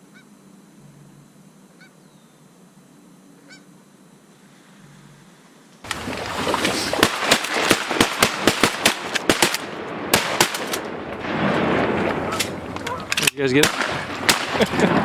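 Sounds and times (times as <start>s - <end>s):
shotguns firing: 5.9s - 15.0s.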